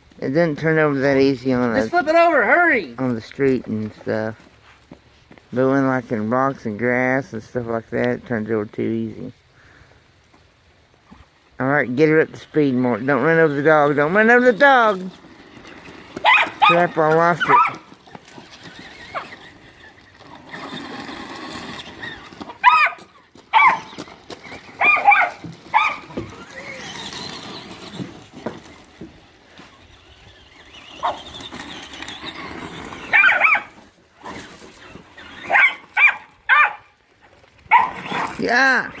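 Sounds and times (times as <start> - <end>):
dog barking: 16.2 - 16.8, 17.4 - 17.8, 22.6 - 23.9, 24.8 - 26.0, 33.1 - 33.7, 35.5 - 36.9, 37.7 - 38.0.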